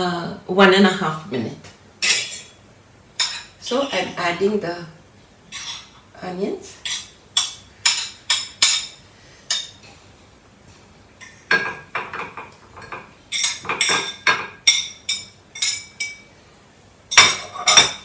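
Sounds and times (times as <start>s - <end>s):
utensil clinking against a dish: 3.2s - 4.1s, 6.8s - 9.8s, 11.2s - 16.3s, 17.1s - 18.0s.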